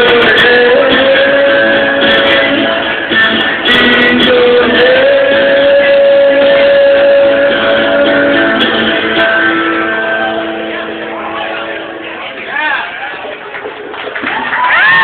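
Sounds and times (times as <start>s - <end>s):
karaoke backing music with guitar: 0.0s - 15.0s.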